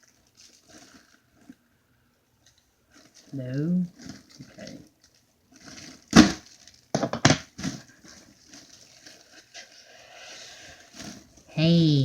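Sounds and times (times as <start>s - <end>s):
sharp cracks and crackles: 4.0s - 7.9s.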